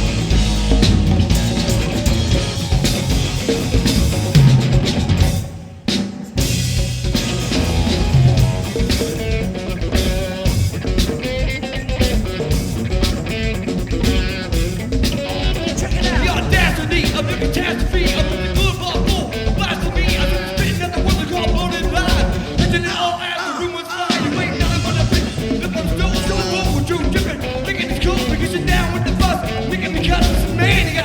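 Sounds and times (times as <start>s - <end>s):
live rock band playing: 0.0s - 22.9s, 24.0s - 31.0s
drums: 0.0s - 31.0s
electric guitar: 0.0s - 31.0s.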